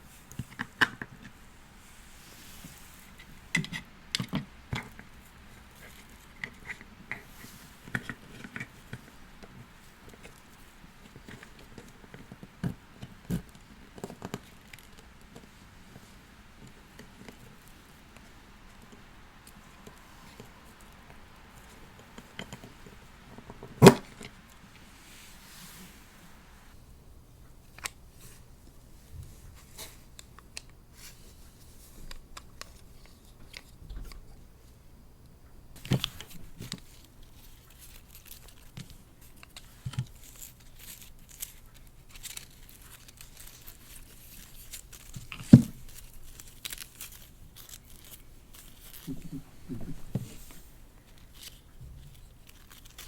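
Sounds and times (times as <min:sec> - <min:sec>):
packaging rustling and crinkling: 0:35.8 - 0:53.0.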